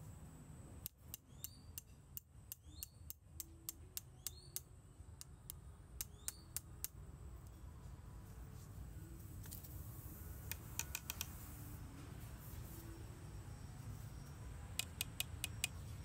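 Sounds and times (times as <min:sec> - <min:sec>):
faint low hum: 0:00.0 - 0:16.0
sharp clicks with rising chirps: 0:00.8 - 0:07.6, 0:10.4 - 0:11.4, 0:13.7 - 0:16.0.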